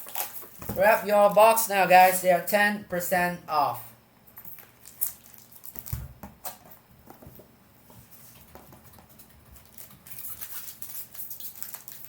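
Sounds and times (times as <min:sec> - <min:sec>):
wrapping crinkling: 0:00.0 - 0:02.2, 0:04.4 - 0:06.8, 0:08.2 - 0:12.0.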